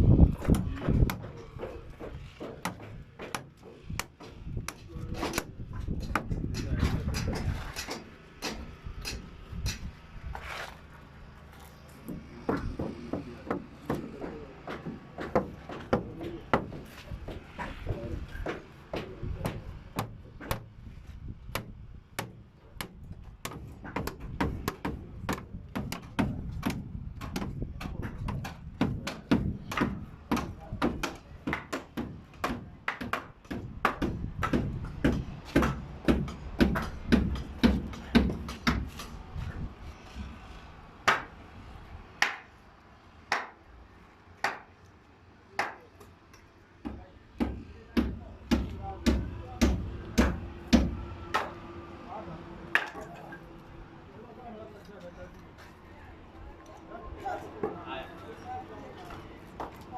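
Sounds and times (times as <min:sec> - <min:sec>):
hammers striking timber: 0:00.2 - 0:09.9, 0:12.0 - 0:39.2, 0:41.0 - 0:41.4, 0:42.2 - 0:42.5, 0:43.3 - 0:43.6, 0:44.4 - 0:44.8, 0:45.6 - 0:45.9, 0:46.8 - 0:51.7, 0:52.7 - 0:53.4.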